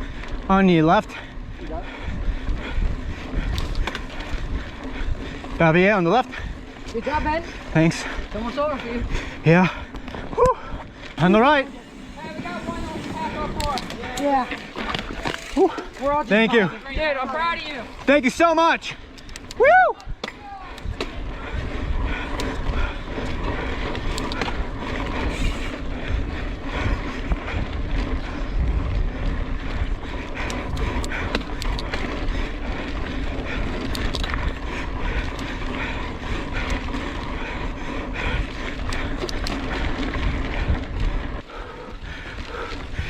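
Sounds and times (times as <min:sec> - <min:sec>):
bike clicking and rattling: 0:00.0 - 0:43.0
bike tyres rumbling on dirt: 0:00.0 - 0:43.0.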